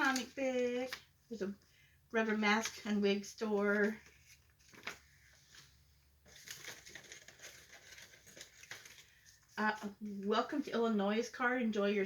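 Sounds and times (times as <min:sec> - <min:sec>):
paper rustling and crinkling: 0:02.4 - 0:10.3.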